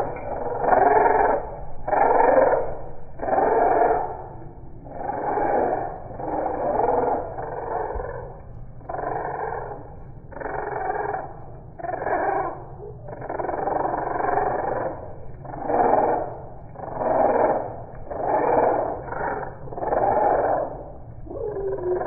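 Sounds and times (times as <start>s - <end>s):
slowed budgerigar chatter: 0.2s - 2.6s, 3.2s - 4.1s, 8.8s - 22.0s.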